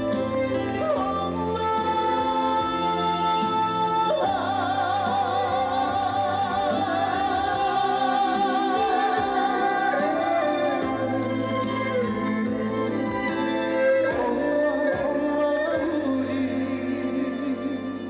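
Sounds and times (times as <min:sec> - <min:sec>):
band playing slow song: 0:00.0 - 0:18.0.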